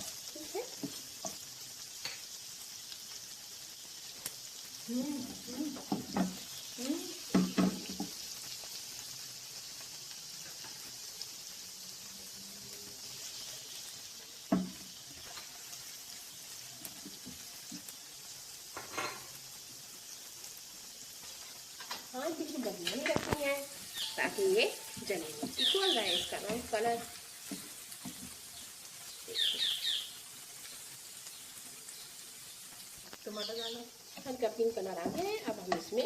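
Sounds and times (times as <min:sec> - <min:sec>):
onion sizzling in hot oil: 0:00.0 - 0:36.0
spoon scraping against pan: 0:18.7 - 0:19.4, 0:21.2 - 0:28.7.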